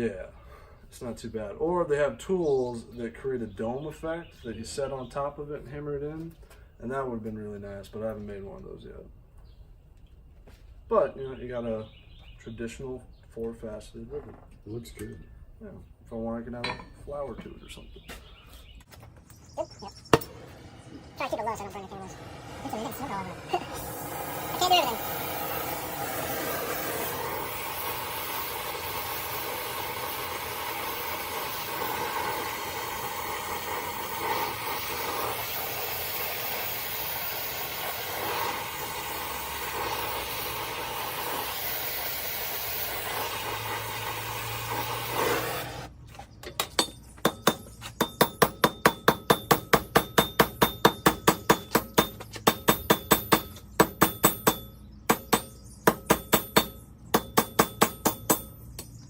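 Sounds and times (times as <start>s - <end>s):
gas torch flame hissing: 20.0s - 45.9s
hammer ringing blows on rivet: 46.6s - 59.0s.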